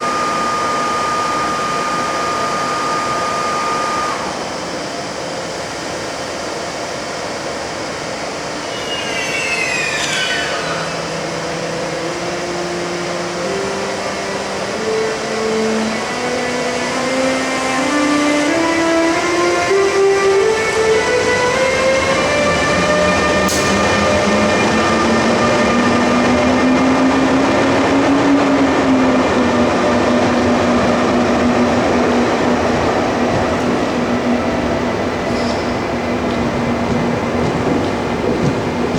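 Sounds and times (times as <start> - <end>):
locomotive whine rising in steps: 0.0 - 5.5, 6.7 - 38.2
train running noise: 0.0 - 38.9
high whistling falling tones: 8.2 - 13.0.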